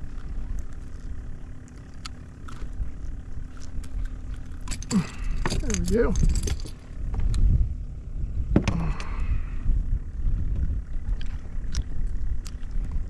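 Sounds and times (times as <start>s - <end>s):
wind buffeting microphone: 2.5s - 13.0s.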